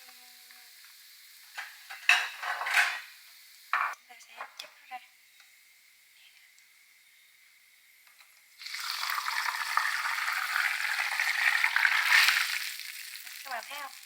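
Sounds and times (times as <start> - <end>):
hot oil sizzling: 0.0 - 14.0.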